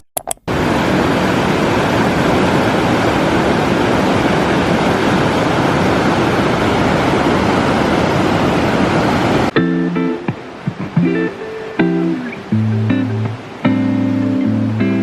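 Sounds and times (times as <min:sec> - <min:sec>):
rush of falling water: 0:00.5 - 0:15.0.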